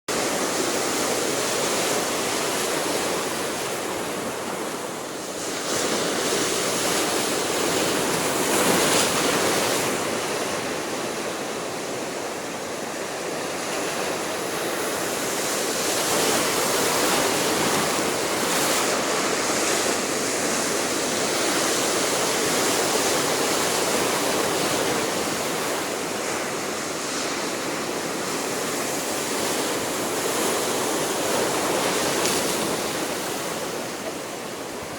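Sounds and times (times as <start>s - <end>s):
waves breaking: 0.1s - 34.9s.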